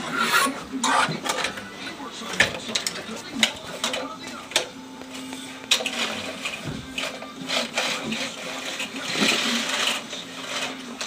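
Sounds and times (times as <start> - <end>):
plastic toys scraping on floor: 5.2 - 11.0.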